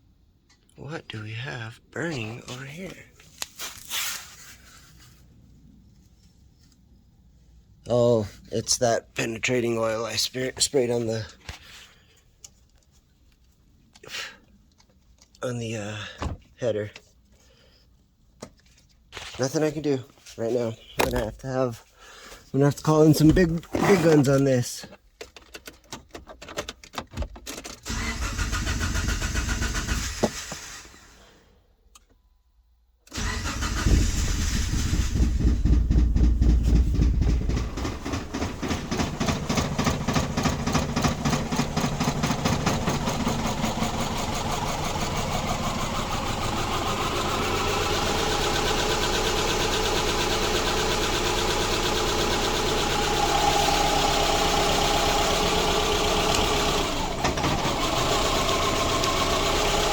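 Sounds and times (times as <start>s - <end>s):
car engine rough idle: 33.2s - 59.9s.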